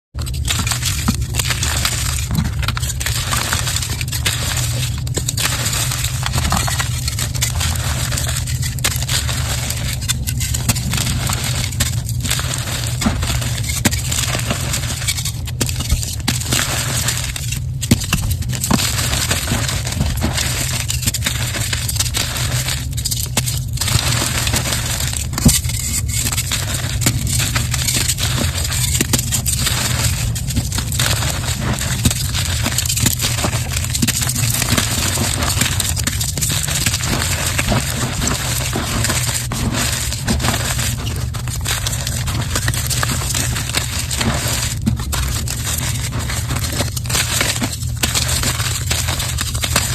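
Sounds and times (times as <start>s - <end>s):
brittle material crunching: 0.2s - 49.9s.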